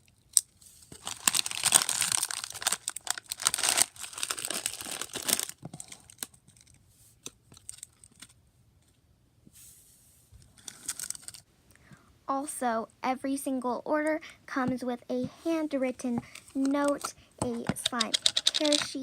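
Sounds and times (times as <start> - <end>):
plastic wrappers crinkling: 0.3 - 6.8, 7.5 - 8.4, 10.6 - 11.4, 17.8 - 18.9.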